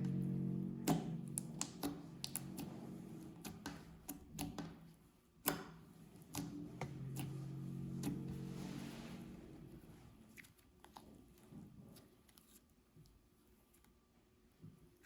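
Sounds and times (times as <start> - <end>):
faint background music: 0.0 - 4.6.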